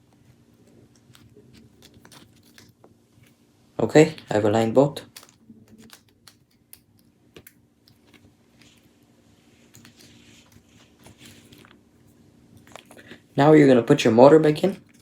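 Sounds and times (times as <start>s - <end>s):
steady low hum: 0.0s - 15.0s
light rustling of parts: 5.0s - 13.3s.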